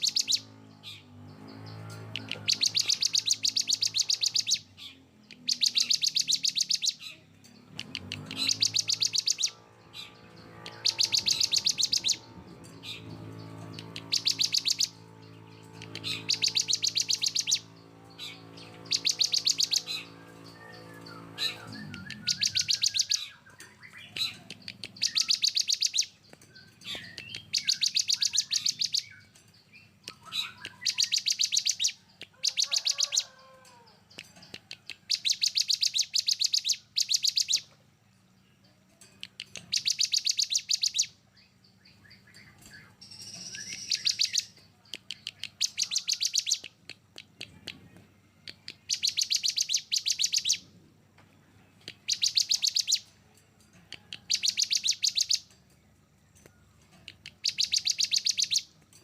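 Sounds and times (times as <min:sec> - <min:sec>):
bird whistled trill: 0:00.0 - 0:00.5, 0:02.4 - 0:04.7, 0:05.4 - 0:07.0, 0:08.4 - 0:09.6, 0:10.7 - 0:12.3, 0:14.0 - 0:15.0, 0:15.8 - 0:17.7, 0:18.8 - 0:29.3, 0:30.0 - 0:33.3, 0:35.1 - 0:37.7, 0:39.7 - 0:41.2, 0:41.8 - 0:44.6, 0:45.4 - 0:46.8, 0:48.8 - 0:50.6, 0:52.0 - 0:53.1, 0:54.2 - 0:55.5, 0:57.4 - 0:58.7
songbird rapid rattling trills: 0:00.0 - 0:07.0, 0:07.6 - 0:24.0, 0:24.6 - 0:33.3, 0:34.2 - 0:37.7, 0:39.5 - 0:41.2, 0:42.2 - 0:44.6, 0:45.4 - 0:46.7, 0:48.8 - 0:50.6, 0:52.0 - 0:55.8, 0:57.3 - 0:59.0.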